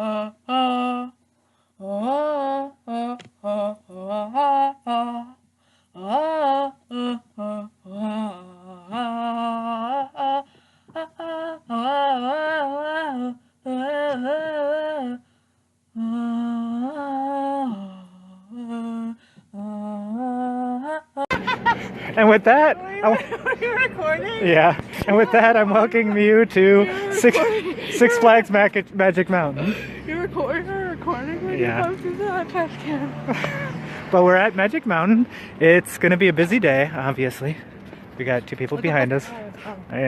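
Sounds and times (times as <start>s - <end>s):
person humming a melody: 0.0s - 1.2s, 1.8s - 5.4s, 6.0s - 15.3s, 15.9s - 21.4s.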